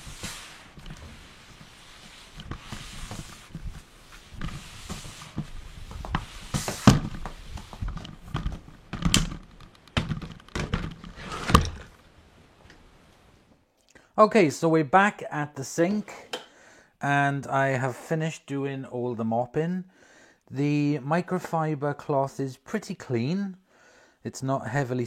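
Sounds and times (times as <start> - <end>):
mop and plastic bucket knocking: 2.4 - 11.8.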